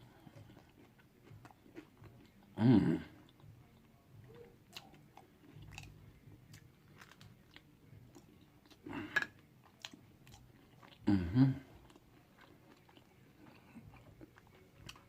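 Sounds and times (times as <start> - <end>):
chewing food: 0.0 - 15.0.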